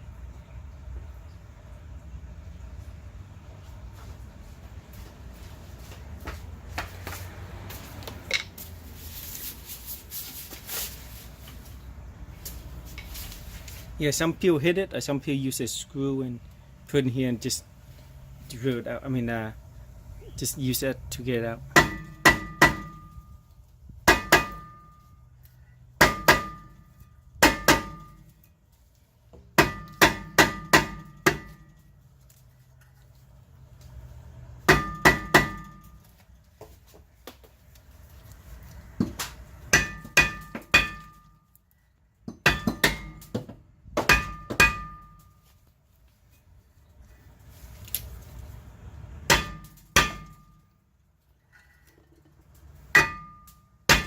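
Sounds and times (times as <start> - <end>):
hammer striking metal brake rotor: 21.8 - 23.4, 24.0 - 25.2, 26.0 - 28.4, 29.6 - 31.8, 34.7 - 36.0, 39.0 - 41.5, 42.3 - 45.4, 49.3 - 50.7, 52.9 - 54.0.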